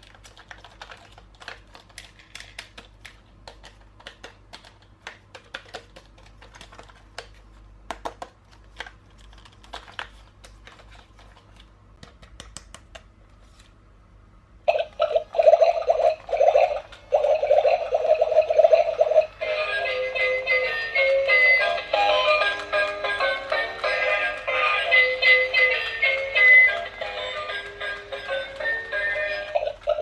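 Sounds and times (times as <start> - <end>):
plastic toy parts clicking: 0.0 - 11.4.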